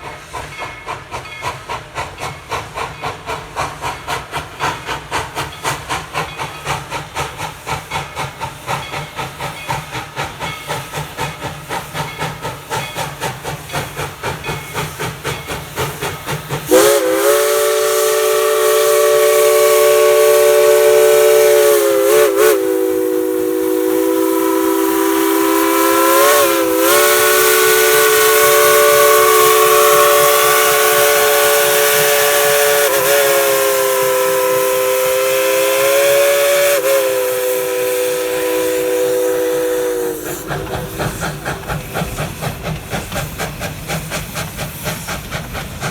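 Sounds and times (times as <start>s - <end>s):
steam locomotive chuffing: 0.0s - 45.9s
steam whistle blast: 16.7s - 41.8s.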